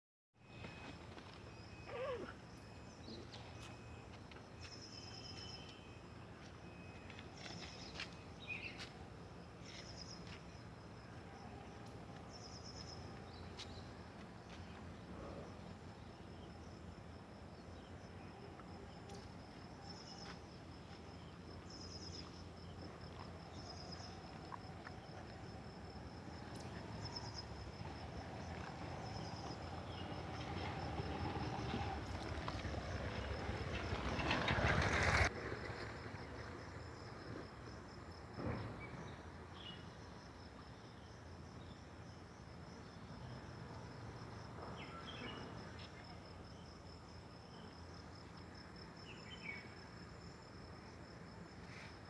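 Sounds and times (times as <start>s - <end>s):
insects trilling: 14.8s - 52.0s.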